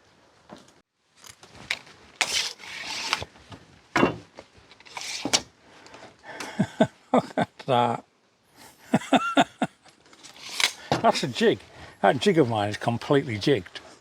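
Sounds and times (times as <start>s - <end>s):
timber scraping and rustling: 0.5s - 5.5s, 10.0s - 14.0s
wooden knocks: 4.0s - 4.3s.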